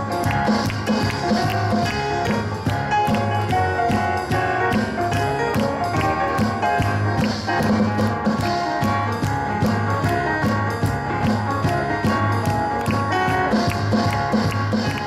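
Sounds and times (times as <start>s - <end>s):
boogie-woogie keyboard: 0.0s - 15.0s
drum beats: 0.0s - 15.0s.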